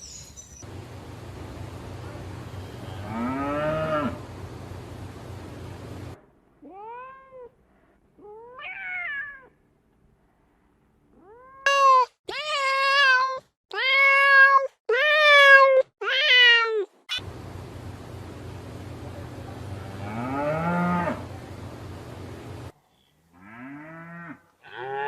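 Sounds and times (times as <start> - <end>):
cat meowing: 8.2 - 9.5, 11.2 - 16.9.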